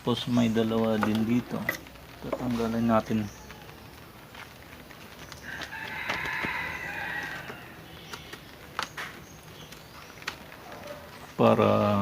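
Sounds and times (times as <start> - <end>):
rooster crowing: 5.4 - 8.0.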